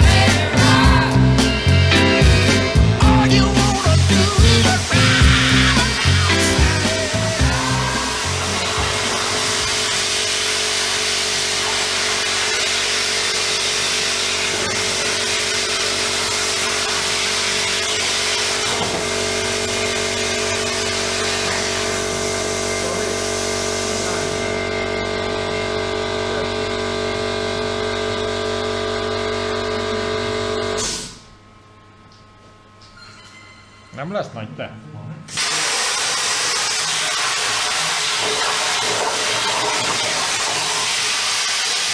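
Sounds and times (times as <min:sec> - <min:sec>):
mechanical hum: 0:00.0 - 0:41.9
plasma cutter hissing: 0:03.1 - 0:24.6, 0:35.3 - 0:41.9.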